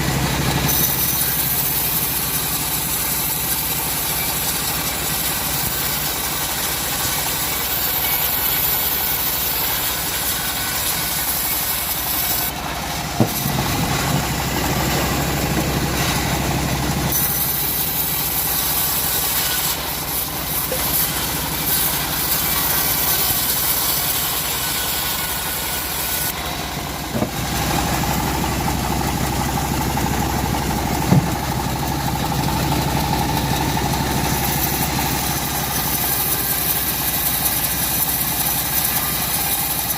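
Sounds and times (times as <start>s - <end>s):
petrol saw engine running: 0.0s - 39.9s
sharp knocks: 13.1s - 16.2s, 31.0s - 31.5s.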